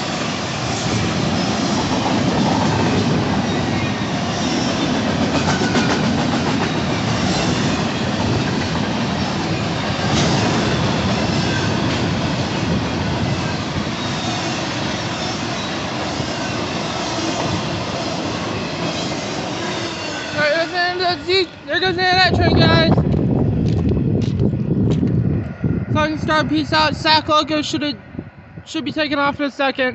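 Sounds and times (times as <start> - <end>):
freight train wheels clattering on rails: 0.0 - 20.4.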